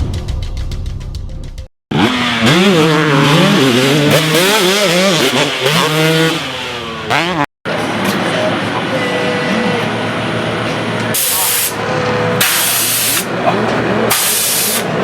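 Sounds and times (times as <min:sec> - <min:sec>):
dirt bike engine revving: 0:01.9 - 0:15.0.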